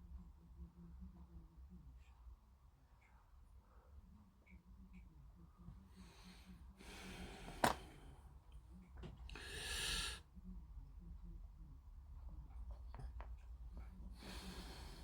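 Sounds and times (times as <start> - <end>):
hissy breaths of air: 9.4 - 10.2.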